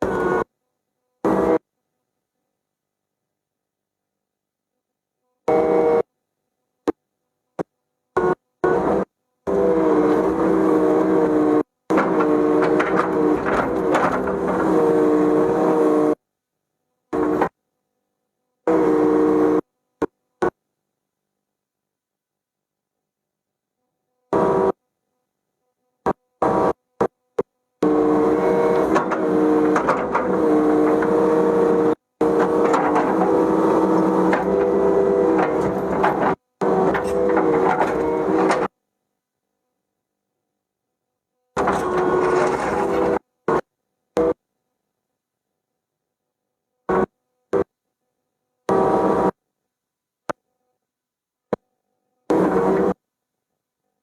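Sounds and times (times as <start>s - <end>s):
excavator engine running under load: 8.7s - 16.2s, 27.8s - 38.7s, 41.6s - 43.2s
knocks: 11.9s - 14.9s, 28.4s - 38.7s
metal clanks: 11.9s - 15.2s, 28.2s - 38.7s, 41.6s - 43.2s.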